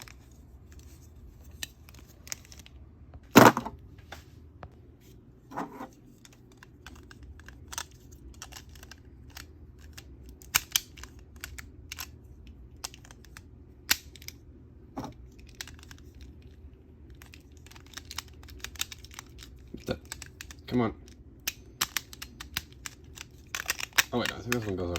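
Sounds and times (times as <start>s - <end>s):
plastic toy parts clicking: 6.2s - 14.4s, 15.1s - 16.5s, 17.1s - 24.9s.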